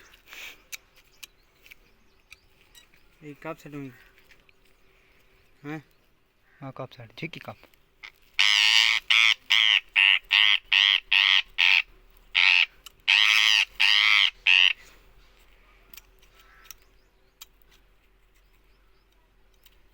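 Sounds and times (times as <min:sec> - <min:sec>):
parrot squawking: 0:08.4 - 0:14.8.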